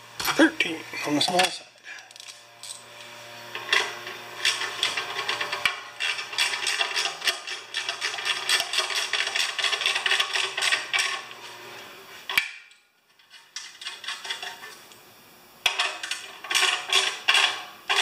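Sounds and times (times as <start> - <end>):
metal tools clinking: 1.2 - 2.9.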